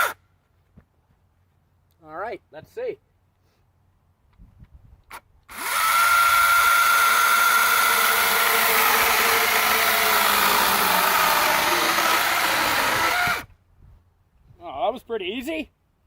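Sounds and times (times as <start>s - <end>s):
electric chainsaw cutting log: 5.5s - 13.5s.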